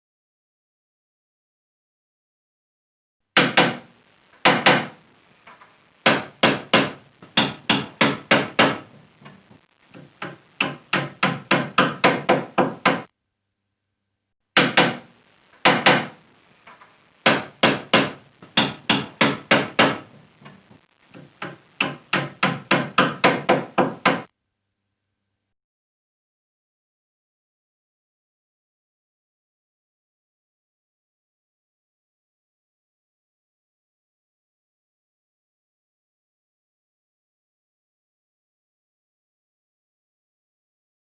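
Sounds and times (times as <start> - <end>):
hammer striking: 3.4 - 5.0, 6.0 - 9.4, 10.0 - 13.1, 14.6 - 16.2, 17.2 - 20.6, 21.2 - 24.3.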